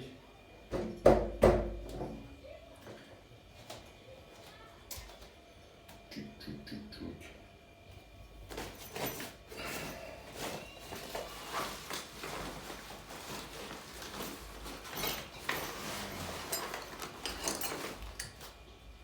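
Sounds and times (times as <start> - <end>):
machine parts knocking and scraping: 11.3 - 18.5.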